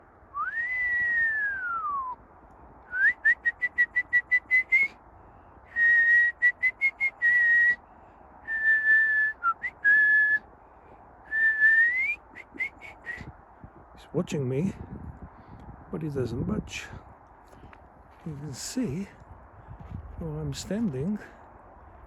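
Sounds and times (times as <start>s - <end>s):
person whistling: 0.4s - 2.2s, 2.9s - 4.9s, 5.7s - 7.8s, 8.5s - 10.4s, 11.3s - 13.3s.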